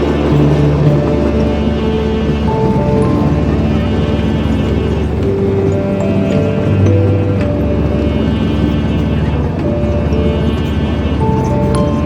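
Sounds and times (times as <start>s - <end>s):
background music: 0.0s - 12.0s.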